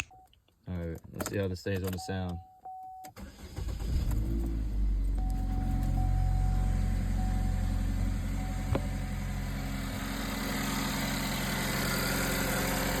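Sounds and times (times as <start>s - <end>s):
car engine idling with exhaust leak: 3.3s - 13.0s.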